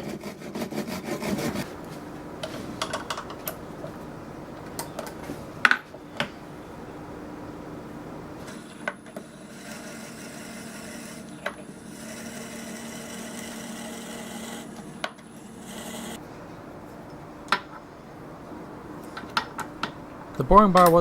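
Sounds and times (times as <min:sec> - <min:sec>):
cutting tool rubbing scrape: 0:00.0 - 0:03.1, 0:08.4 - 0:16.2
lathe humming: 0:00.0 - 0:21.0.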